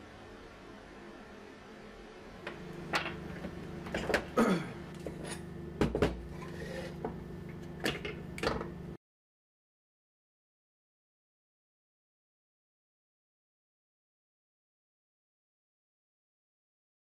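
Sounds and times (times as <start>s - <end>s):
steady low hum: 0.0s - 9.0s.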